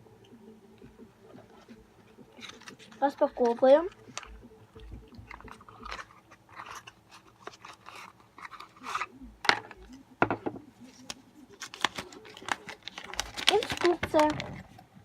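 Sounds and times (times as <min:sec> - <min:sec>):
packaging rustling and crinkling: 0:01.3 - 0:04.4, 0:05.2 - 0:10.0, 0:10.9 - 0:15.0
packaging snapping: 0:05.2 - 0:09.8, 0:11.0 - 0:14.6.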